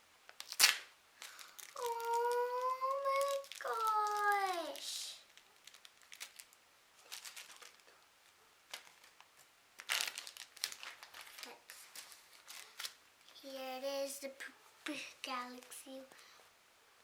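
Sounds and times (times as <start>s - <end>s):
plastic packaging crinkling: 0.3s - 8.0s, 8.7s - 13.4s.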